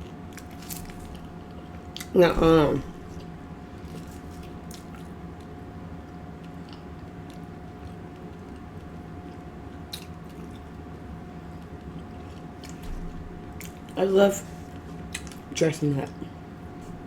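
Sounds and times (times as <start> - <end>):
steady low hum: 0.0 - 17.0
person chewing food: 2.9 - 12.8, 14.6 - 15.5.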